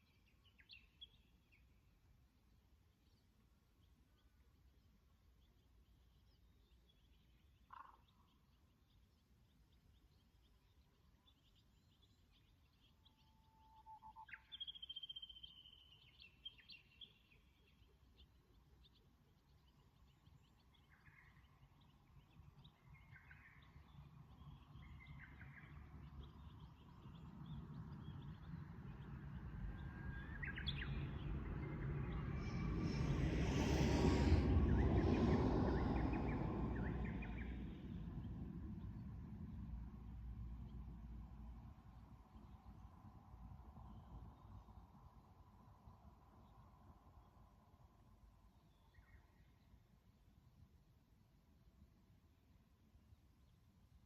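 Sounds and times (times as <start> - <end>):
birds singing: 5.5 - 32.6.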